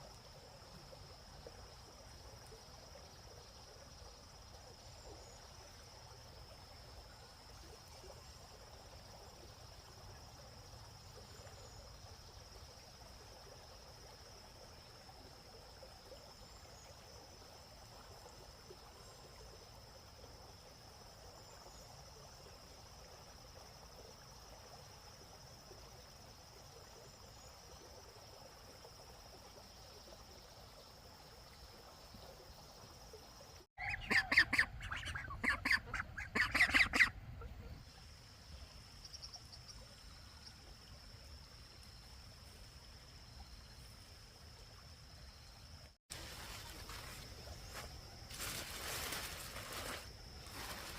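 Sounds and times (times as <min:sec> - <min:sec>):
rapid bird calls: 0:33.8 - 0:37.1.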